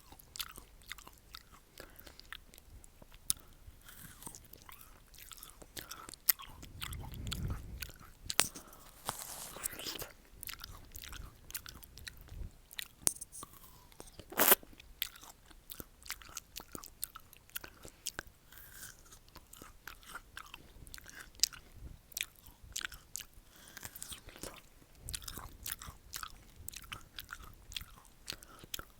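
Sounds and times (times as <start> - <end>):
wet chewing: 0.0 - 28.9
crunching bites of pear: 3.9 - 11.8.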